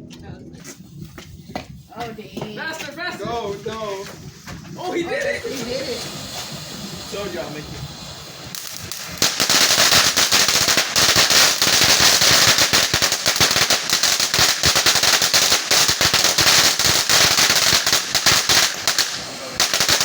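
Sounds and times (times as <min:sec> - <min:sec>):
firecrackers popping: 0:00.6 - 0:20.0.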